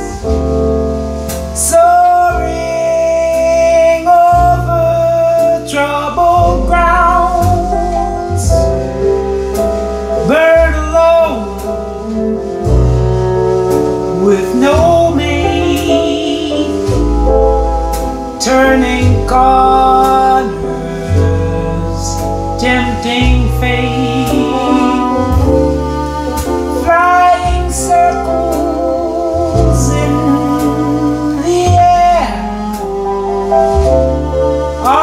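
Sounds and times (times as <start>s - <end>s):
jazz ballad instrumental: 0.0s - 35.0s.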